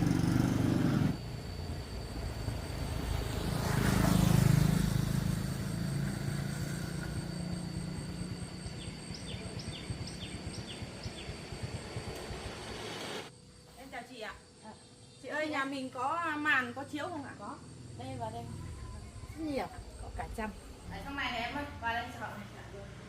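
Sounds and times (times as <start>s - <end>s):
vehicle engine: 0.0s - 13.3s, 17.9s - 23.0s.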